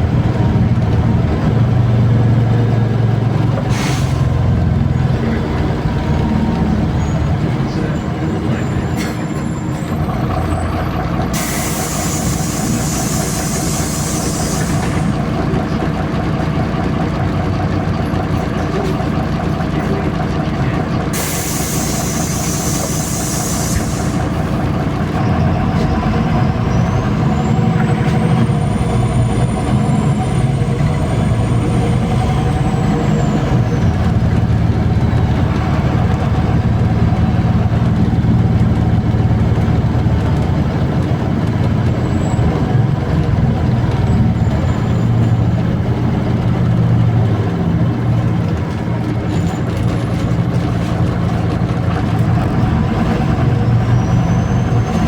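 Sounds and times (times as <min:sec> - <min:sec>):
bus engine running: 0:00.0 - 0:55.0
compressed air hiss: 0:11.4 - 0:15.0, 0:21.2 - 0:24.2.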